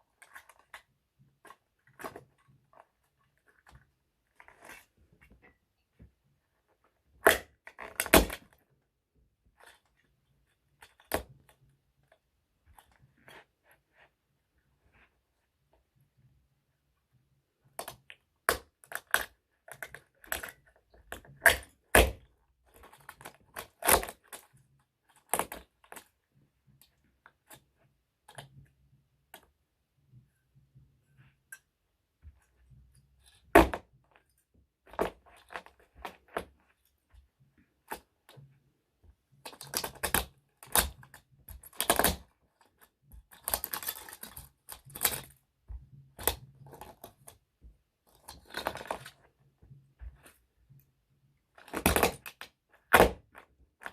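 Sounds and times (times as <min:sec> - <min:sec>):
toy truck cracking and snapping: 0:22.9 - 0:24.5, 0:39.5 - 0:42.2.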